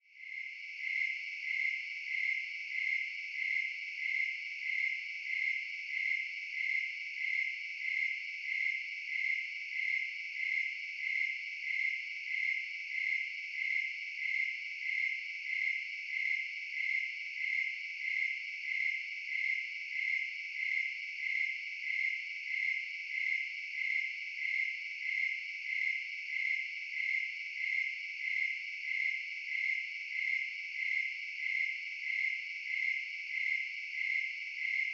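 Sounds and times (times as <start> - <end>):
crickets chirping: 0.2 - 34.9.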